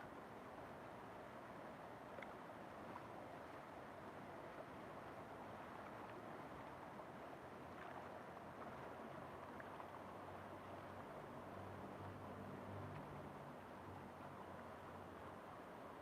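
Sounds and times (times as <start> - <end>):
river water flowing: 0.0 - 16.0
faint ticks: 2.1 - 2.4.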